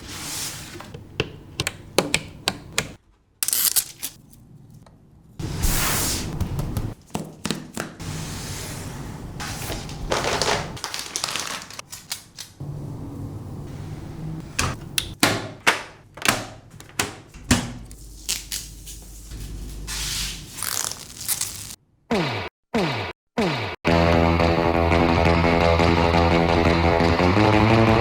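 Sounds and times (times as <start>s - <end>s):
computer parts clicking and knocking: 1.0s - 4.0s
sliding and rustling: 8.0s - 11.8s.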